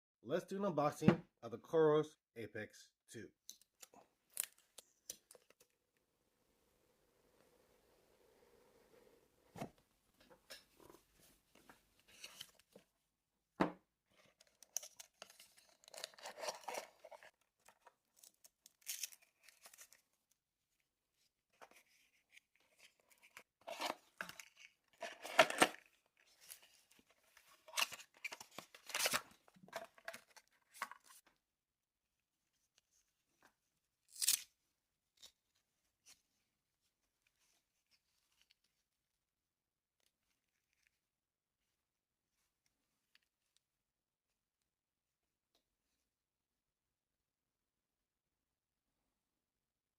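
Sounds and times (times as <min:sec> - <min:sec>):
paper and plastic tearing: 0:14.7 - 0:17.3, 0:27.7 - 0:31.2, 0:34.1 - 0:34.4.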